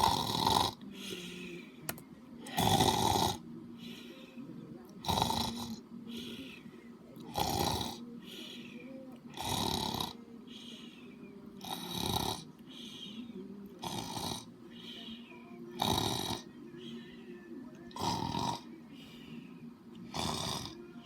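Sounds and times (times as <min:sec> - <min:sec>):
loud rasping snoring: 0:00.0 - 0:00.8, 0:02.5 - 0:03.4, 0:05.0 - 0:05.8, 0:07.3 - 0:08.0, 0:09.4 - 0:10.2, 0:11.6 - 0:12.5, 0:13.8 - 0:14.5, 0:15.8 - 0:16.5, 0:17.9 - 0:18.7, 0:20.1 - 0:20.9
quiet breaths: 0:00.0 - 0:21.0.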